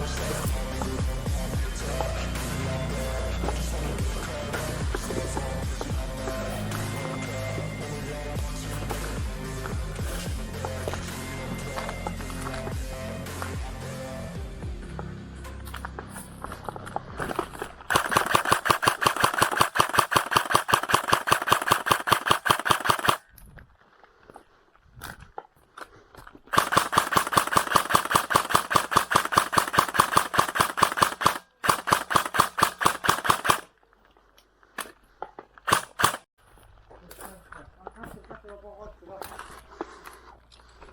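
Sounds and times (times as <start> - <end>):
airsoft gun firing: 17.9 - 23.2, 26.5 - 33.7, 35.7 - 36.3.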